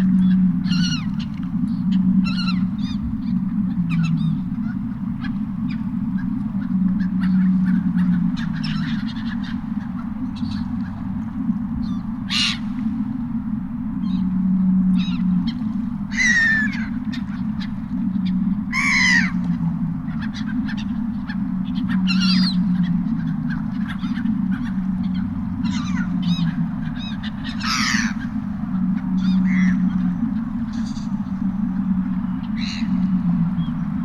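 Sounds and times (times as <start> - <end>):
seagulls crying: 0.0 - 34.0
steady low rumble: 0.0 - 34.0.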